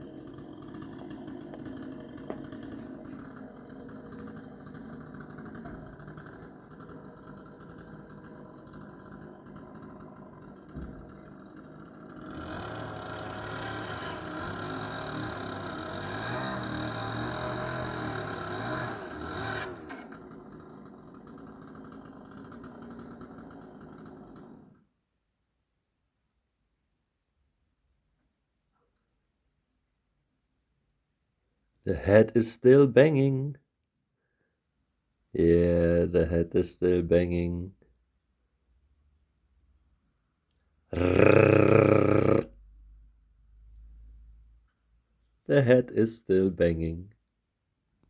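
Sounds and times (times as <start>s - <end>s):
engine running: 0.0s - 24.5s.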